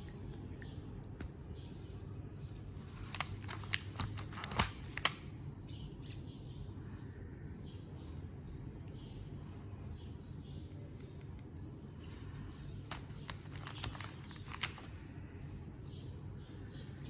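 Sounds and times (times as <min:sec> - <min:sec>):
faint high chirping: 0:00.0 - 0:04.6, 0:05.2 - 0:17.0
steady low hum: 0:00.0 - 0:17.0
sewing items clicking and tapping: 0:12.8 - 0:15.1.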